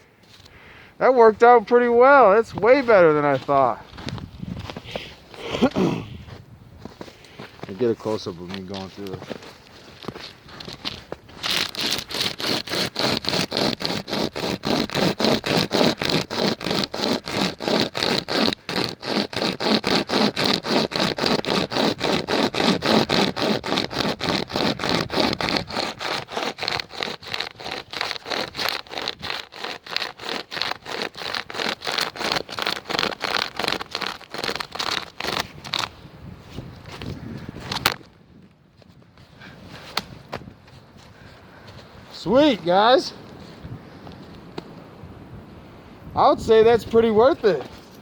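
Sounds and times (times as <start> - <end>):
pocket chainsaw rasping through wood: 11.4 - 35.9.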